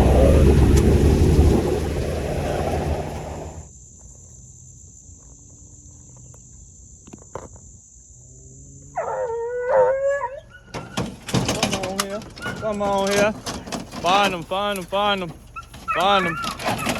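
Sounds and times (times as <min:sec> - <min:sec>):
vehicle noise: 0:00.0 - 0:03.7
hound howling: 0:09.0 - 0:10.7.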